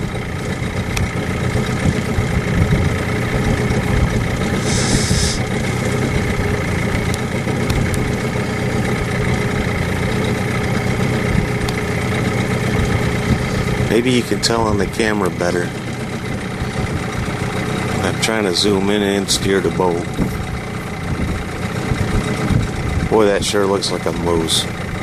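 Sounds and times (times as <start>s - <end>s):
boat motor running: 0.0s - 25.0s
brief high hiss: 4.6s - 5.4s.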